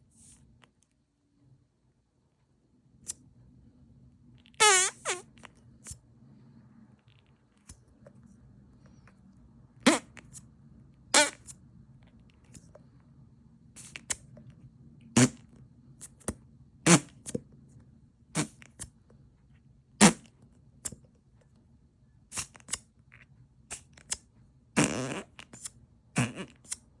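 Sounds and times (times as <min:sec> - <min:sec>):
fart sound effects: 0:04.6 - 0:05.2, 0:09.8 - 0:10.2, 0:11.1 - 0:11.5, 0:16.9 - 0:17.2, 0:18.4 - 0:18.6, 0:20.0 - 0:20.2, 0:24.8 - 0:25.5, 0:26.2 - 0:26.7.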